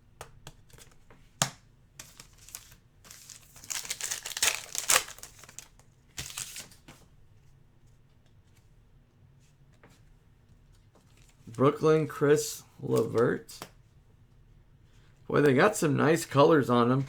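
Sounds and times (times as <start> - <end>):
foil wrapper crinkling and tearing: 2.0 - 6.8.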